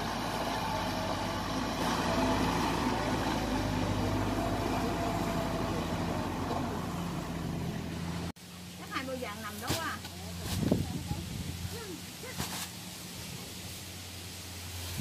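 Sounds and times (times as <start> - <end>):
diesel harvester engine running: 0.0 - 8.7.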